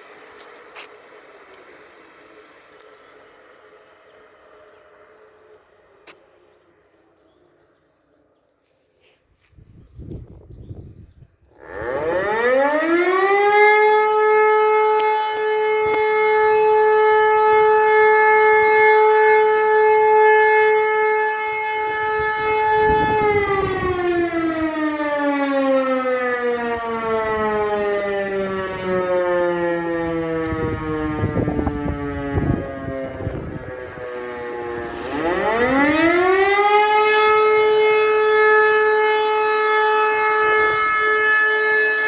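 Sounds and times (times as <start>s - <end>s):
motor siren wailing: 9.9s - 42.0s.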